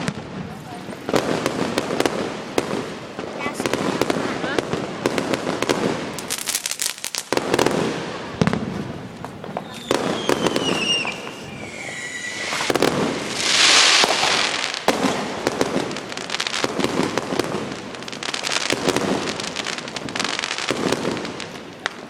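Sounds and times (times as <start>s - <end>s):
firework hissing burst: 0.0s - 22.0s
firework whistle falling in pitch: 9.6s - 12.7s.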